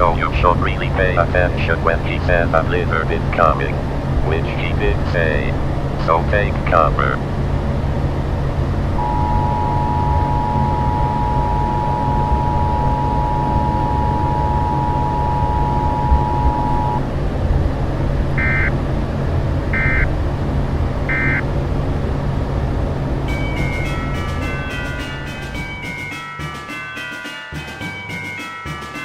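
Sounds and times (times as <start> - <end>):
steady low hum: 0.0 - 26.8
two-tone alarm: 9.0 - 17.0, 18.4 - 18.7, 19.8 - 20.1, 21.1 - 21.4, 23.3 - 29.0
short data-burst beeps: 18.4 - 18.7, 21.1 - 21.4.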